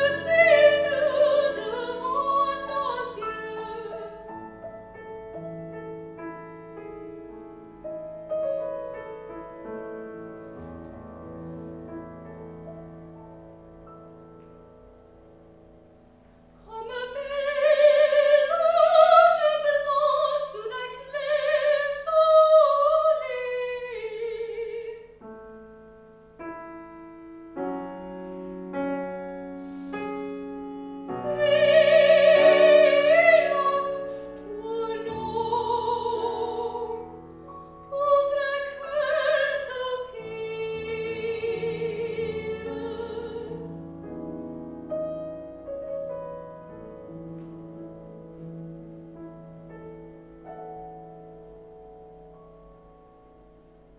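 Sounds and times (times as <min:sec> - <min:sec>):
soprano singing operatically: 0:00.0 - 0:04.3, 0:16.7 - 0:25.2, 0:31.0 - 0:37.2, 0:37.8 - 0:43.7
piano accompaniment: 0:00.0 - 0:53.9.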